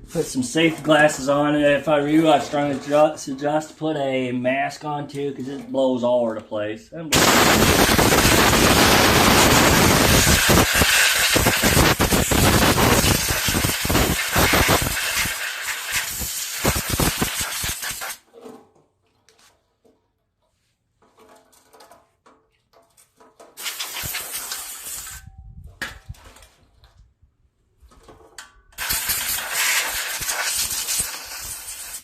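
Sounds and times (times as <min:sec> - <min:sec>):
compressed air blasting hiss: 0:07.2 - 0:18.2, 0:23.6 - 0:25.2, 0:28.8 - 0:32.0.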